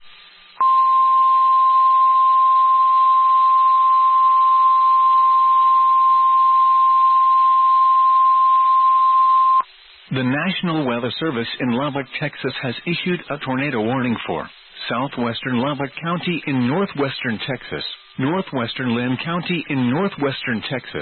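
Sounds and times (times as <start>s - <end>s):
faint hiss: 0.0s - 0.7s, 9.6s - 21.0s.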